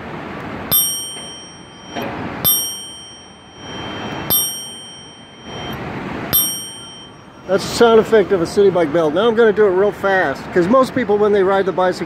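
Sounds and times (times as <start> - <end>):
bicycle bell dings: 0.7 - 7.6.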